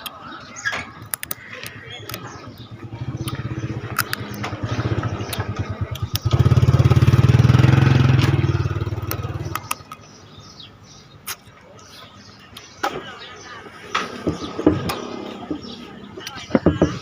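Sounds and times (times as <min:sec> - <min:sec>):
motorcycle engine passing: 0:02.3 - 0:09.9.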